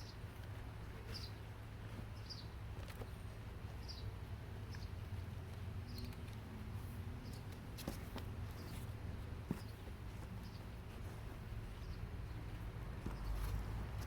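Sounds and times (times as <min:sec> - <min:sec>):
low background hum: 0:00.0 - 0:14.0
small bird chirping: 0:01.1 - 0:01.4, 0:02.1 - 0:02.6, 0:03.8 - 0:04.1.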